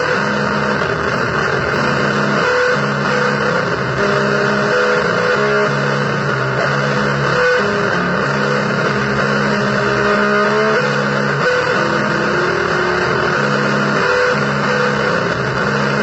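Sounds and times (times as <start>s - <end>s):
distorted electric guitar blues: 0.0s - 16.0s.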